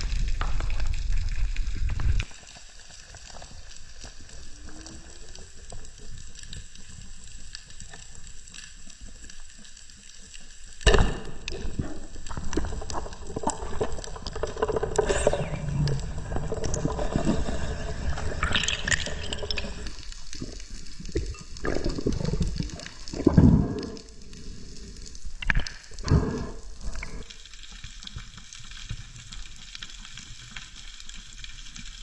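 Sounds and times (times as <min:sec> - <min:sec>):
underwater bubbling: 0:00.0 - 0:32.0
underwater clicks: 0:05.7 - 0:27.3.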